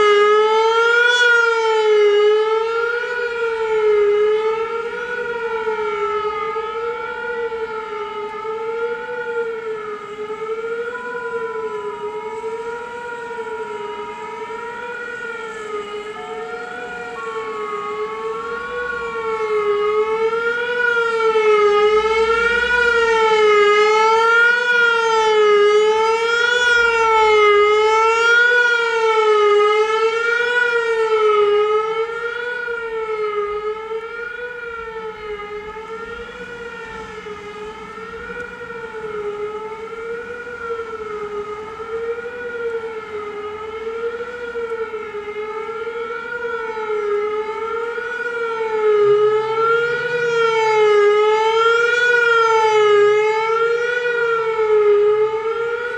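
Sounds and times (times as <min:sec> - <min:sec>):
wavering tornado siren: 0:00.0 - 0:55.9.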